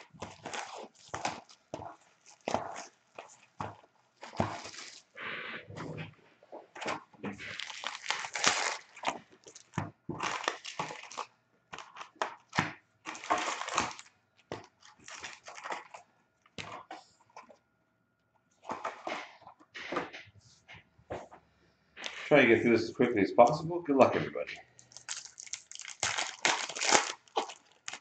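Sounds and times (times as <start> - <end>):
packaging tearing and crinkling: 0.0 - 5.1, 6.8 - 16.0, 24.8 - 28.0.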